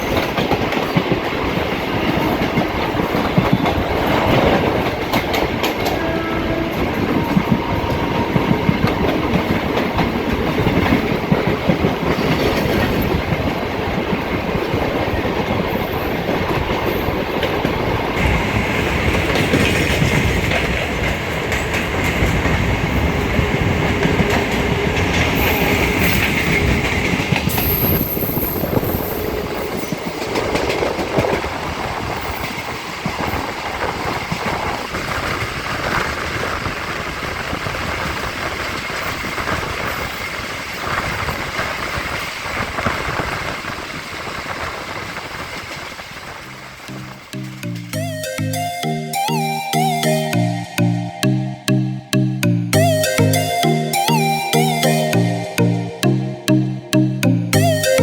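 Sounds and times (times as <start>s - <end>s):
train rolling roar: 0.0s - 58.0s
train wheels clattering over rail joints: 7.1s - 29.0s.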